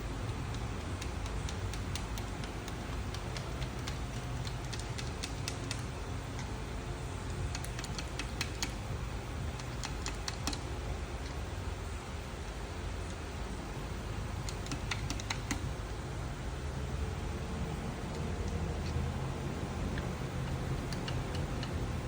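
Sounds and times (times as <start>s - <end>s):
light clicking and ticking: 0.0s - 11.4s, 14.3s - 16.0s, 17.8s - 22.0s
steady low hum: 0.0s - 22.0s.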